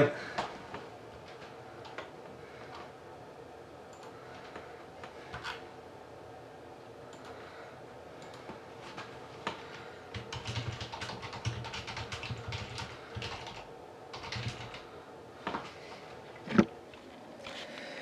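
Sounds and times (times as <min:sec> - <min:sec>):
computer keyboard typing: 0:09.5 - 0:14.9.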